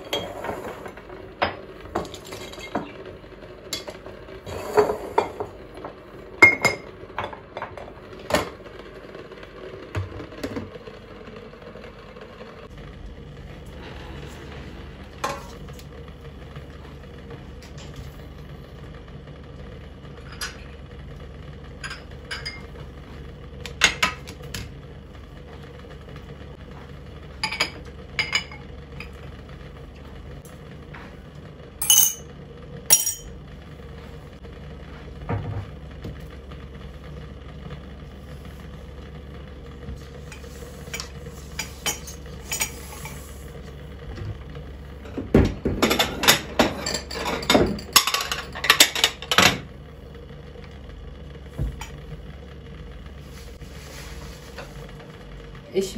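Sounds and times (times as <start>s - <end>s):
dishes and cutlery clinking: 31.8s - 32.2s, 32.9s - 33.3s.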